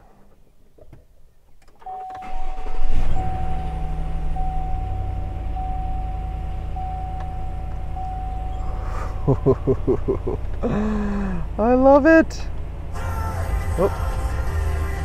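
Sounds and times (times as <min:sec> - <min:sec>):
truck engine starting and idling: 0:01.6 - 0:15.0
dashboard warning chime: 0:01.8 - 0:10.6.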